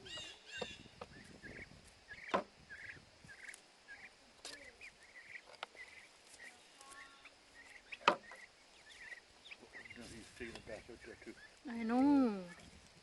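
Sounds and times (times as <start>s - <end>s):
turkeys and chickens calling: 0.0s - 12.8s.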